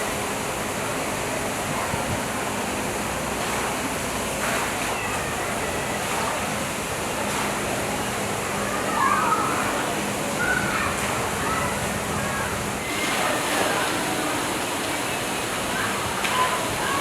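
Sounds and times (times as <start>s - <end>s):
faint indistinct voices: 4.4s - 17.0s.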